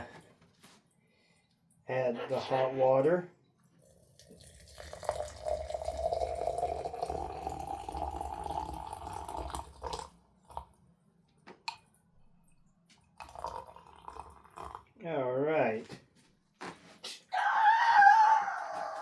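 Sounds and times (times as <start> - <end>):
hot water pouring into vessel: 3.8 - 10.7, 13.2 - 14.9.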